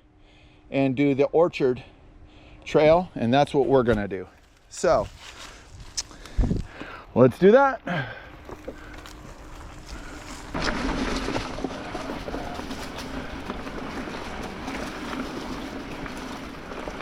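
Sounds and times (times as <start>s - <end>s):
mountain bike rolling on dirt: 3.7s - 17.0s
wind rumble on microphone: 5.6s - 6.8s.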